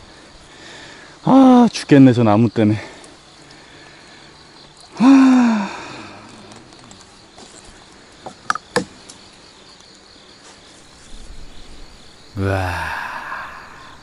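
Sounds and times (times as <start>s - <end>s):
faint insect chirring: 0.0s - 14.0s
man groaning: 12.3s - 14.0s.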